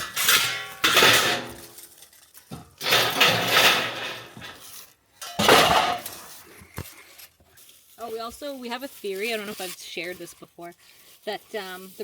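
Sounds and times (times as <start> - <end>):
scrap metal clattering and clanging: 0.0 - 7.4.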